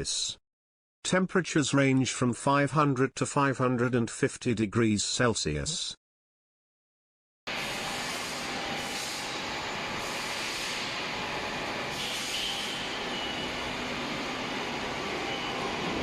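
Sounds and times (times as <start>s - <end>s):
industrial machine noise: 7.5s - 16.0s.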